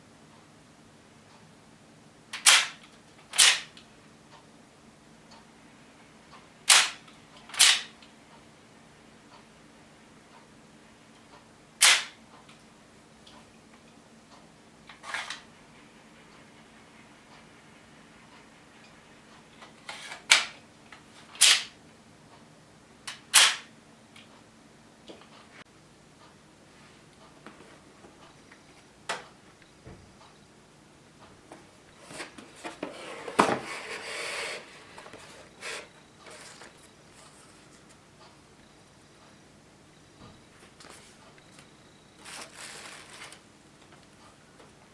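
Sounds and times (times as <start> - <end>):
quiet mechanical clicks: 1.1 - 1.6, 3.8 - 5.6, 9.2 - 11.6, 12.3 - 15.0, 24.1 - 32.8, 34.8 - 44.9
plastic model gun clicks: 2.4 - 2.8, 3.4 - 3.7, 6.7 - 7.9, 11.8 - 12.2, 23.1 - 23.7
toy pistol action snap: 2.4 - 2.8, 3.4 - 3.7, 6.7 - 7.0, 7.6 - 7.9, 11.8 - 12.2, 21.4 - 21.7, 23.1 - 23.7
rustling and scraping: 31.9 - 38.0, 42.2 - 43.4.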